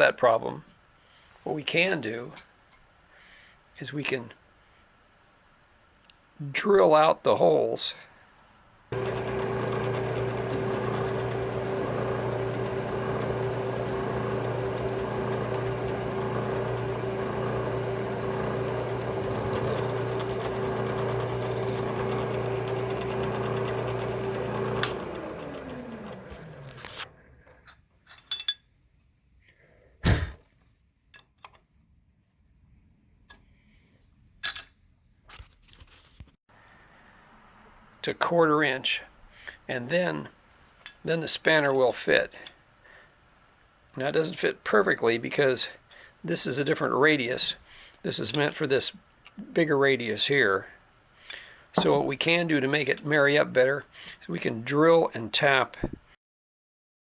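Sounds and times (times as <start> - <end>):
electric drill running: 8.9 - 27.1.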